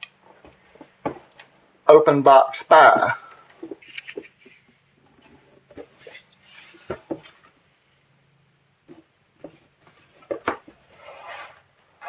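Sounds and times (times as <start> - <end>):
sharp handling knocks and taps: 0.4 - 1.4, 3.0 - 4.3.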